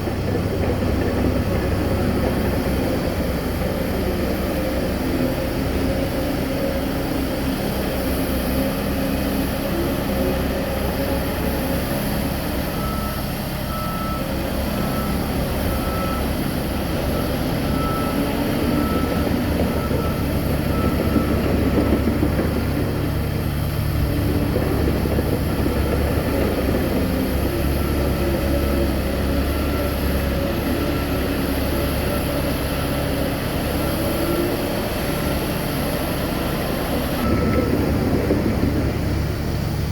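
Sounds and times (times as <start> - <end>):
heavy engines running: 0.0 - 39.9
reversing alarm beeping: 10.7 - 23.4, 24.0 - 38.9.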